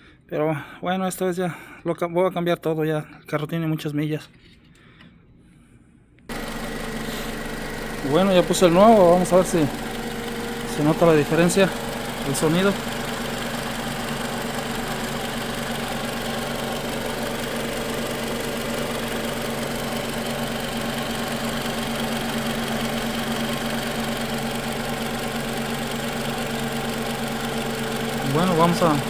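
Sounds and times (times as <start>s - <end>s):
car engine idling: 6.3s - 29.0s.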